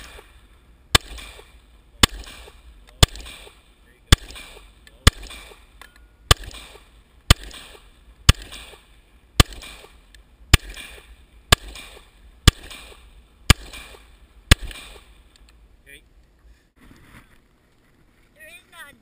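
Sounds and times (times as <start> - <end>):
pistol shots with echo: 0.0 - 15.2.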